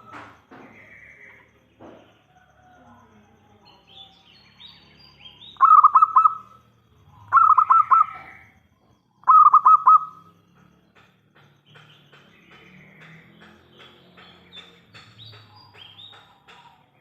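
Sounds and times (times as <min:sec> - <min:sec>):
faint high bird chirps: 0:00.0 - 0:11.0
dove cooing: 0:05.6 - 0:08.5, 0:09.2 - 0:10.3.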